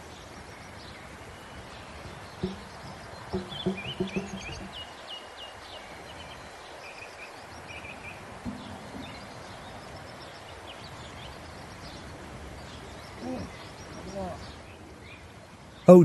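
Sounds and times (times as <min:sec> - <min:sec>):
small birds chirping: 0:00.0 - 0:15.9
knock: 0:02.4 - 0:04.9, 0:08.5 - 0:09.2.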